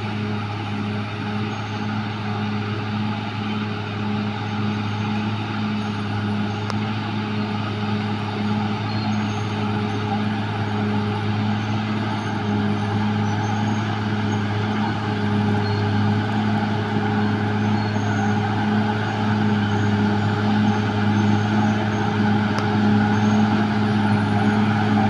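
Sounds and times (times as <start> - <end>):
bulldozer diesel engine running: 0.0 - 25.0.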